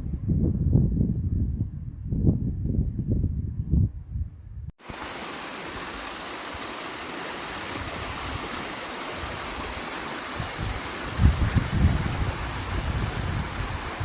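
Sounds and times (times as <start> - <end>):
wind buffeting microphone: 0.0 - 4.7, 7.4 - 14.0
steady rushing hiss: 4.8 - 14.0.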